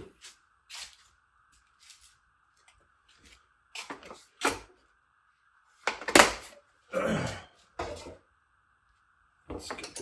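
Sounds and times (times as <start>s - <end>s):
faint high hum: 0.0s - 10.0s.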